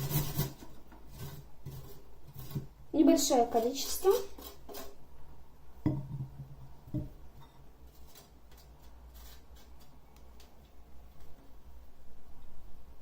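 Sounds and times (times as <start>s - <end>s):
utensil tapping a dish: 5.8s - 7.2s.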